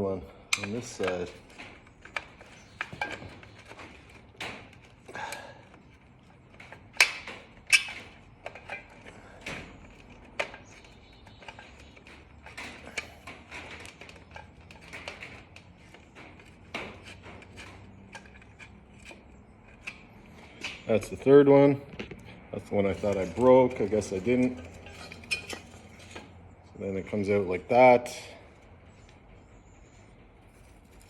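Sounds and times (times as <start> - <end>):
screwdriver and screws clinking: 22.8 - 26.2.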